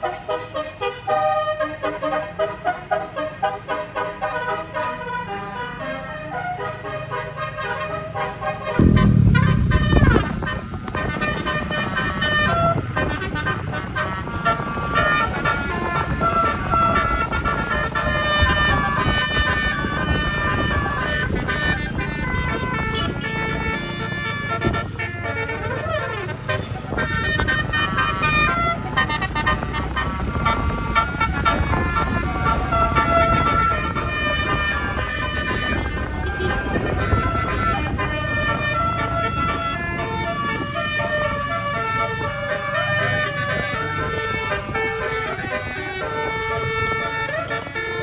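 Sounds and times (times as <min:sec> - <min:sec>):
air horn playing a tune: 0:03.7 - 0:48.0
low rumble: 0:08.8 - 0:11.3.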